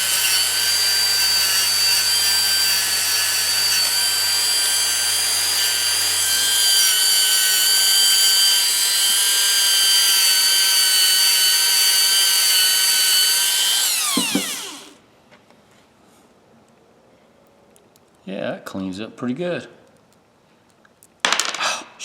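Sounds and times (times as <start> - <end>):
abrasive wheel whining: 0.0 - 15.0.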